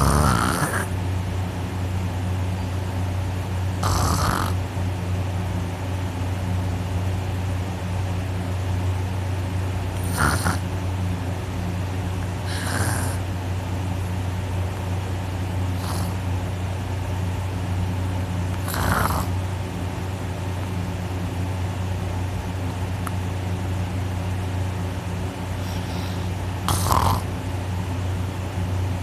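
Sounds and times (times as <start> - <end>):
person snoring: 0.0 - 0.9, 3.8 - 4.6, 10.0 - 10.6, 12.4 - 13.2, 15.8 - 16.2, 18.6 - 19.3, 25.6 - 27.3.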